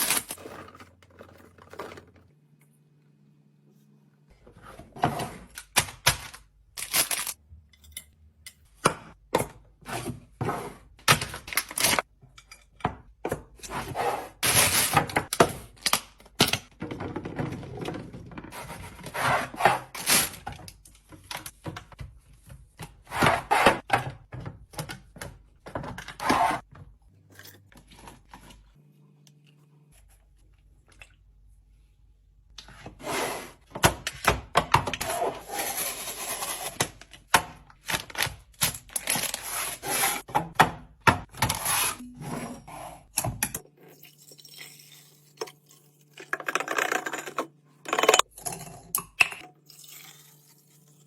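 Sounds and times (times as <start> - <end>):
plastic containers clacking down: 0.3 - 2.3.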